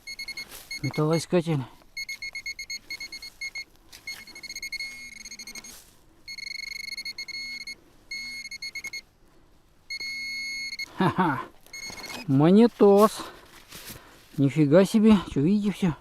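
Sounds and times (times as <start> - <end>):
metal detector beeping: 0.0 - 9.1, 9.9 - 13.0.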